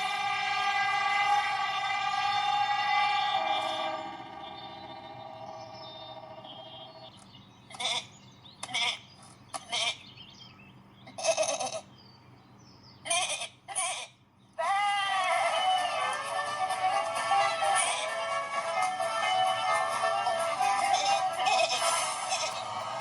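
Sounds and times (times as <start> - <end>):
music: 0.0 - 7.1, 14.7 - 23.0
cartoon animal bleats and squeaks: 11.1 - 11.9, 13.1 - 15.4, 20.8 - 22.7.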